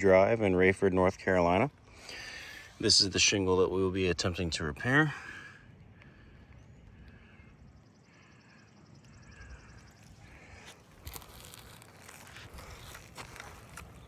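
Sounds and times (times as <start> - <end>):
hand work on roof shingle: 10.6 - 14.0.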